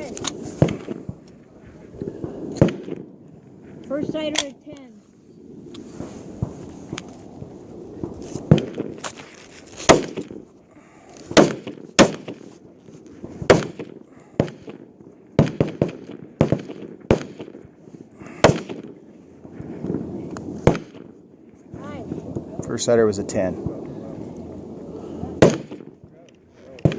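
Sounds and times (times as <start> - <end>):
rifle shots cracking: 0.0 - 1.2, 2.2 - 3.1, 8.4 - 9.1, 9.8 - 10.5, 11.2 - 12.5, 13.2 - 19.0, 20.6 - 21.2, 25.4 - 26.0.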